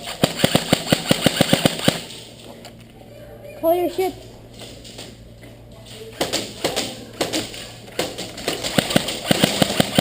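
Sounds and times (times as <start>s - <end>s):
airsoft gun shots: 0.0s - 2.1s, 8.4s - 10.0s.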